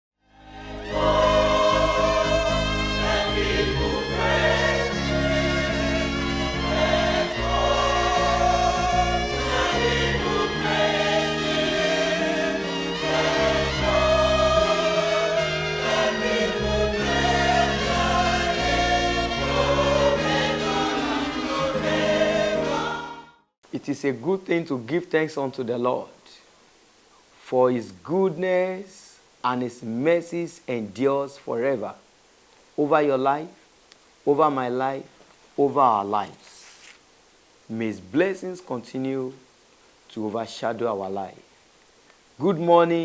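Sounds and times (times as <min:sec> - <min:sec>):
choir singing gospel music: 0:00.2 - 0:23.4
held bass notes: 0:00.8 - 0:22.9.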